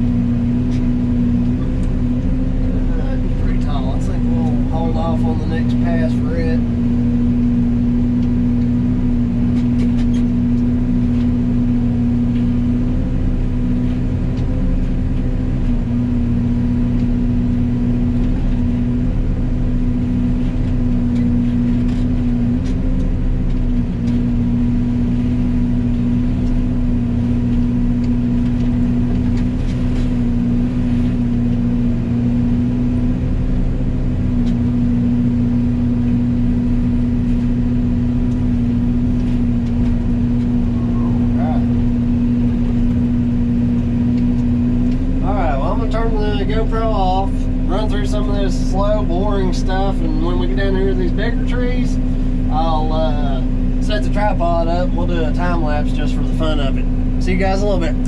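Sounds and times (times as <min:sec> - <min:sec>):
excavator diesel engine droning: 0:00.0 - 0:58.0
mulching head humming: 0:00.0 - 0:58.0.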